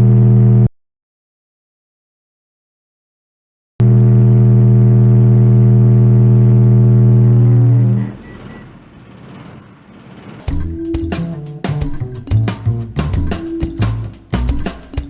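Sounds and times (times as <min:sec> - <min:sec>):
low bass test tone: 0:00.0 - 0:00.7, 0:03.8 - 0:08.2.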